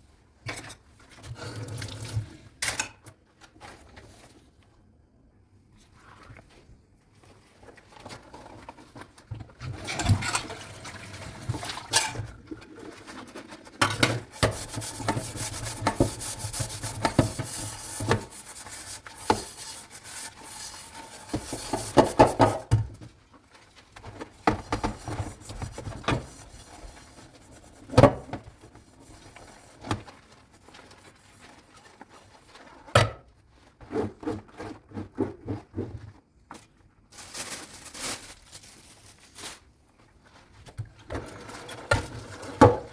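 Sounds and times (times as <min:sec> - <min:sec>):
scrubbing dishes: 0:09.7 - 0:22.8.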